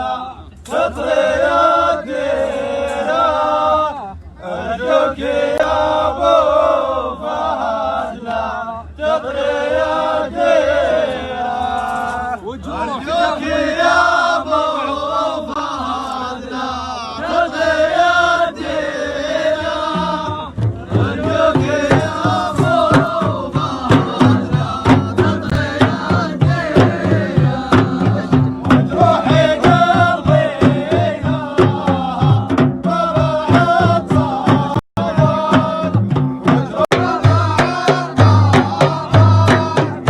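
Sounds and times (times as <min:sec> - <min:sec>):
chanted singing: 0:00.0 - 0:40.0
steady drum beat: 0:16.7 - 0:40.0.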